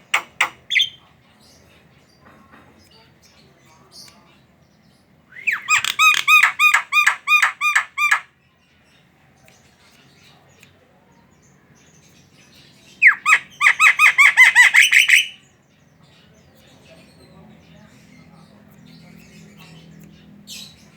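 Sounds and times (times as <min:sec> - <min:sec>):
myna bird squawking: 0:00.0 - 0:01.0, 0:05.4 - 0:08.3, 0:13.0 - 0:15.4.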